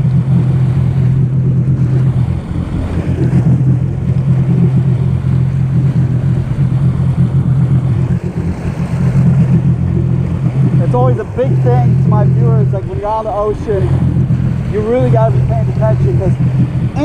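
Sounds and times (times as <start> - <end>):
jet ski engine drone: 0.0 - 17.0
water rushing: 0.0 - 17.0
wind buffeting microphone: 0.0 - 17.0.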